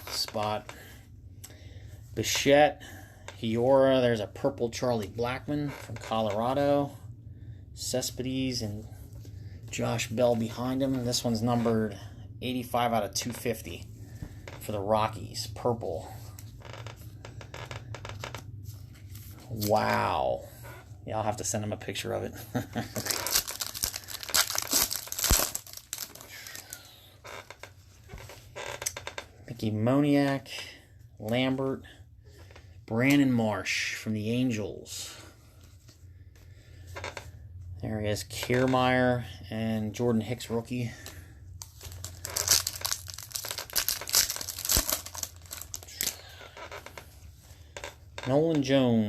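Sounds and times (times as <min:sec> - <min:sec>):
foil wrapper tearing and crinkling: 0:22.5 - 0:27.6, 0:41.6 - 0:46.8.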